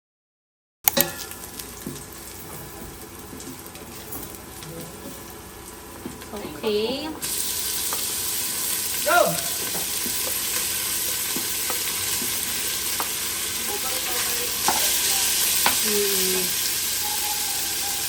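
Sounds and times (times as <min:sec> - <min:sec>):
utensil clicking against pan: 0:00.9 - 0:01.2
food sizzling in a pan: 0:01.0 - 0:18.0.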